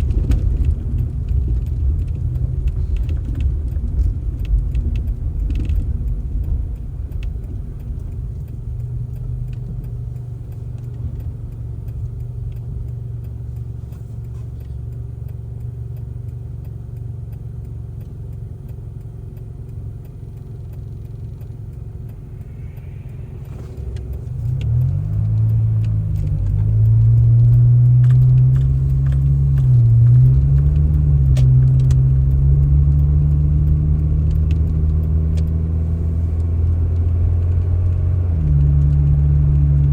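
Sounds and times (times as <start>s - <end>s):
vehicle engine rumbling: 0.0s - 39.9s.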